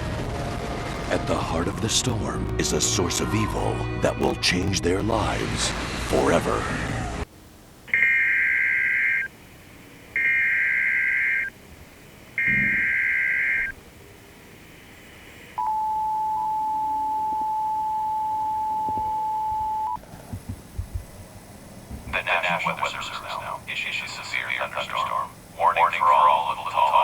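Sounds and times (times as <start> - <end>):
two-tone attention signal: 7.9 - 9.3, 10.2 - 11.5, 12.4 - 13.7, 15.6 - 20.0
buzzy digital data bursts: 7.9 - 13.8, 22.0 - 27.0.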